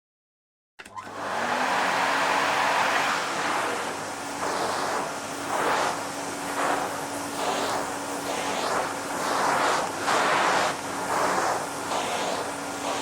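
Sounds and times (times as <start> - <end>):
vacuum cleaner switch click: 0.8 - 1.1
vacuum cleaner motor humming: 0.8 - 13.0
rushing suction: 1.1 - 13.0.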